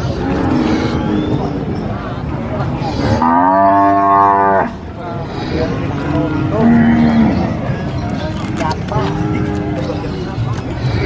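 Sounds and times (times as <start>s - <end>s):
cattle mooing: 3.0s - 4.8s.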